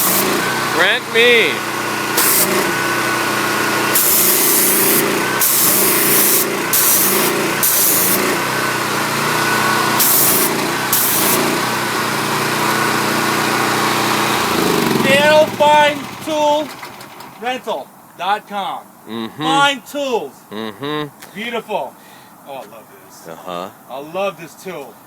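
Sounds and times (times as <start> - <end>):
high-pressure water spray hissing: 0.0 - 16.8
pressure washer engine running: 0.0 - 17.6.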